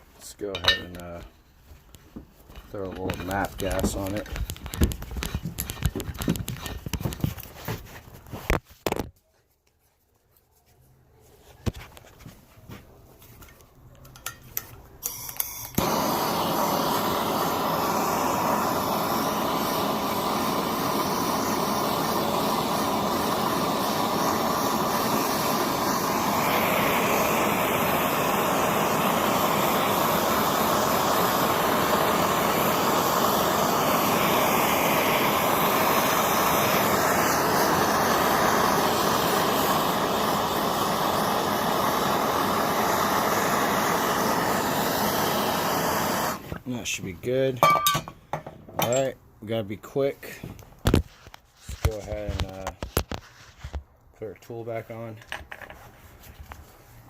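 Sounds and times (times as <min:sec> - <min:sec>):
torch igniter clicks: 0:01.9 - 0:07.3
gas torch hissing: 0:02.4 - 0:08.6, 0:15.0 - 0:49.1.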